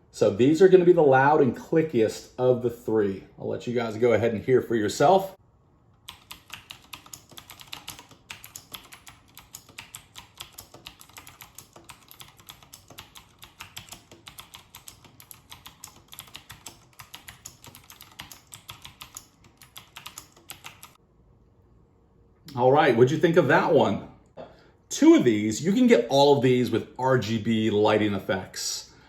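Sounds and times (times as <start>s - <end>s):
mechanical keyboard typing: 6.0s - 21.0s.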